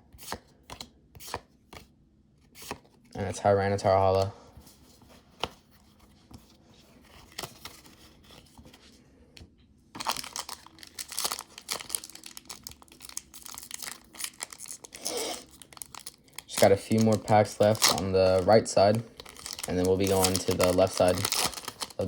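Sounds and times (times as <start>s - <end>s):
foil wrapper crinkling and tearing: 10.0s - 22.0s.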